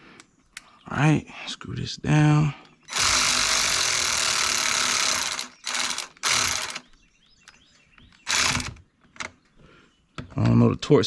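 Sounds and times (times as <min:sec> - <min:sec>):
ratchet wrench clicking: 0:02.9 - 0:06.8, 0:08.3 - 0:08.7.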